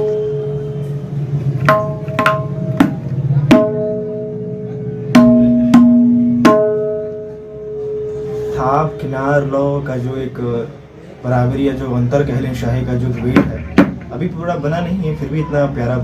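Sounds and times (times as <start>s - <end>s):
tabla strokes ringing: 0.0s - 9.8s
low bass resonance: 0.0s - 16.0s.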